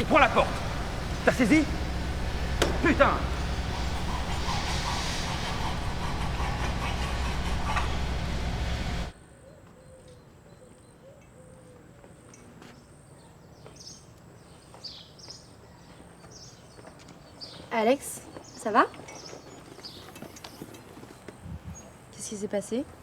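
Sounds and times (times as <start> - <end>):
factory machinery humming: 0.0 - 9.1.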